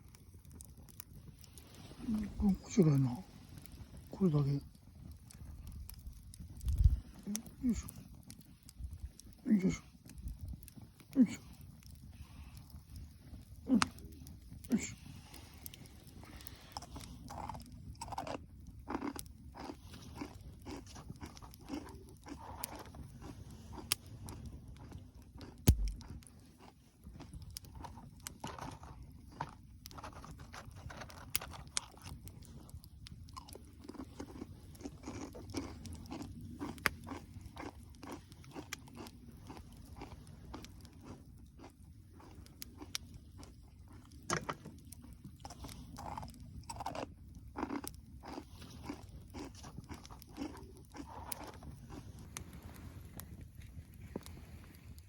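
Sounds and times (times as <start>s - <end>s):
dry wood crunching and snapping: 0.1s - 26.7s, 27.4s - 41.2s.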